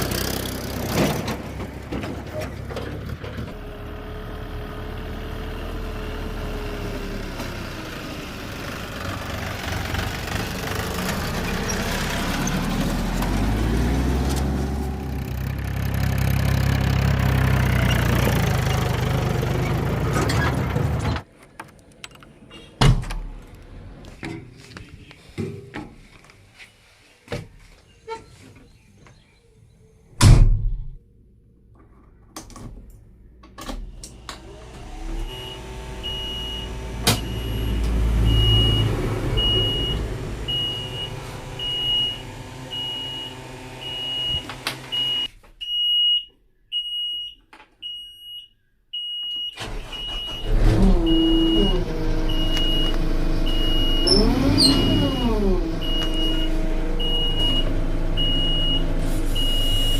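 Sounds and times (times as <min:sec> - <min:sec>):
diesel engine revving: 0:00.0 - 0:21.3, 0:33.9 - 0:45.3, 0:49.6 - 0:59.9
reversing alarm beeping: 0:35.2 - 0:59.9.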